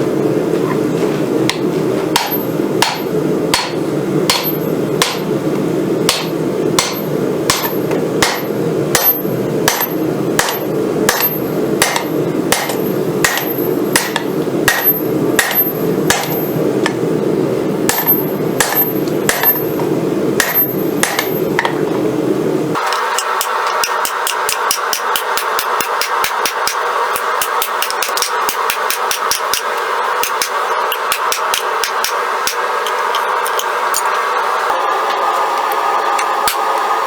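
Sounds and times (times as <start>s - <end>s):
hammer striking steel on anvil: 1.5s - 5.3s, 6.1s - 17.0s, 17.9s - 19.8s, 20.4s - 21.8s, 22.8s - 34.2s.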